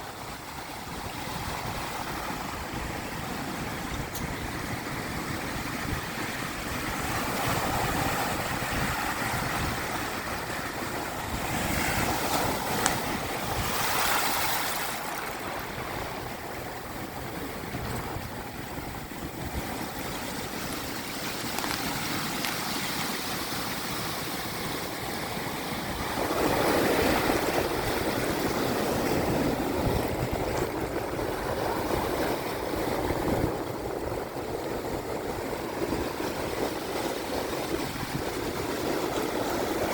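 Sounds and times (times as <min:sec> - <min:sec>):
small waves washing over shells: 0:03.6 - 0:18.2, 0:19.6 - 0:33.1.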